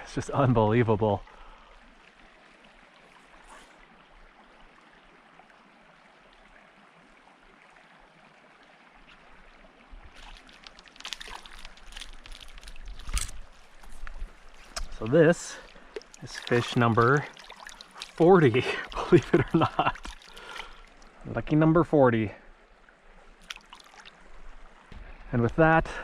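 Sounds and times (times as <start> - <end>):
creek flowing and trickling: 0.0 - 26.0
splashes and rustles: 2.5 - 4.2, 8.9 - 21.3, 23.2 - 26.0.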